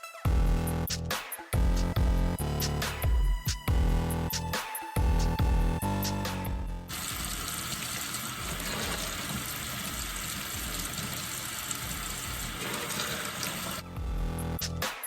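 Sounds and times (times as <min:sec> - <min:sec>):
electronic music: 0:00.0 - 0:07.4, 0:13.6 - 0:15.0
tap water running: 0:06.9 - 0:13.9.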